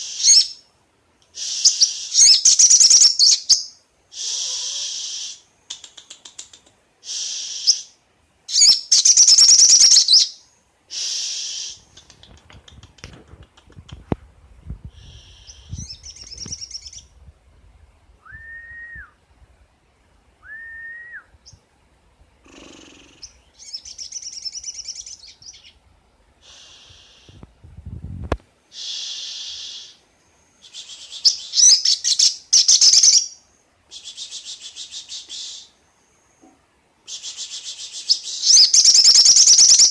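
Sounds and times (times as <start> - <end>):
bird chirping: 1.5 - 6.6, 8.5 - 10.5, 15.0 - 17.2, 22.4 - 25.8, 30.6 - 33.4, 37.1 - 39.9.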